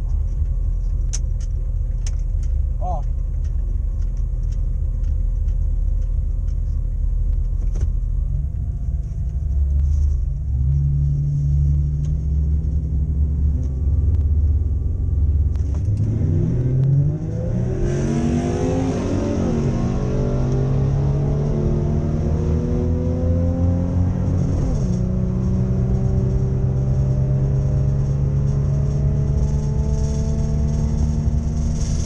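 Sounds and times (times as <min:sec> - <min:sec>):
car engine idling and revving: 0:00.0 - 0:32.0.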